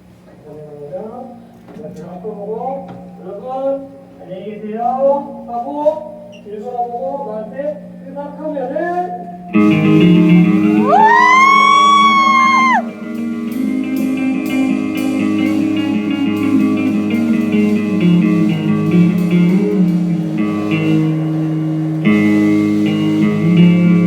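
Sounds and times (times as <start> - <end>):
picked guitar notes: 9.2 - 24.0.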